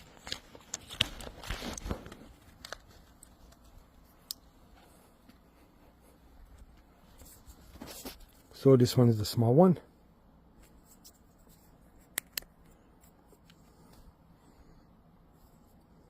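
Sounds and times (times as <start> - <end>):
soft rustling: 0.0 - 8.8.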